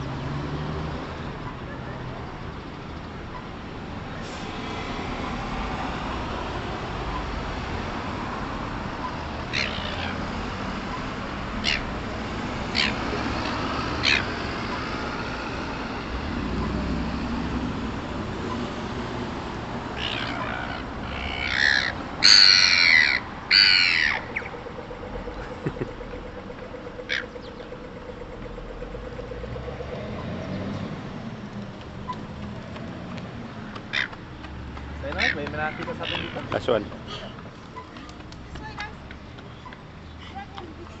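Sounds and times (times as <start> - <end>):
gulls squawking: 8.9 - 16.9, 19.8 - 29.4, 33.5 - 34.2, 35.0 - 37.2.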